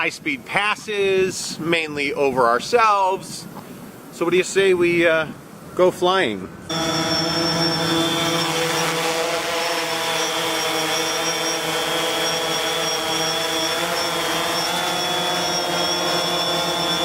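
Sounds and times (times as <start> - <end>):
drone propeller hum: 6.7 - 17.0.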